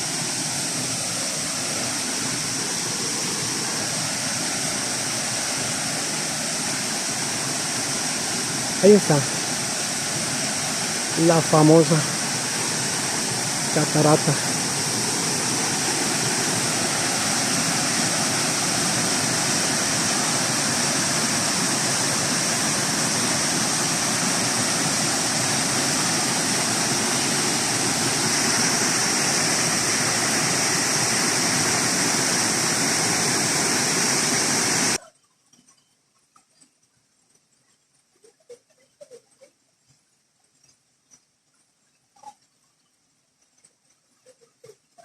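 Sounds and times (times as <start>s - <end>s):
waterfall rushing: 0.0s - 35.0s.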